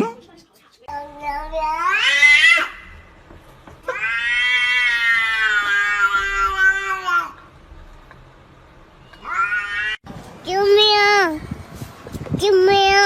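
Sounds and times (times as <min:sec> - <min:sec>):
cat yowling: 0:03.9 - 0:07.4, 0:09.2 - 0:10.0.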